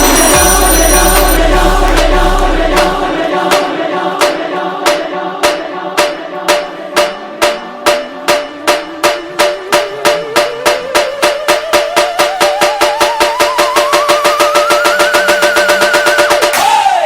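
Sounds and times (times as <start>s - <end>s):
steady held tone: 0.0s - 3.2s
sharp metallic strikes: 0.0s - 3.8s
group singing or chanting: 0.0s - 17.0s.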